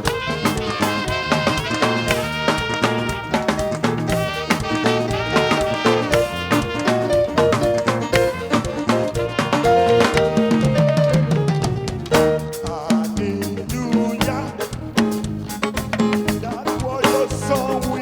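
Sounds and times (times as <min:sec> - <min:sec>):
live band with horns: 0:00.0 - 0:18.0
steady drum beat: 0:00.0 - 0:18.0.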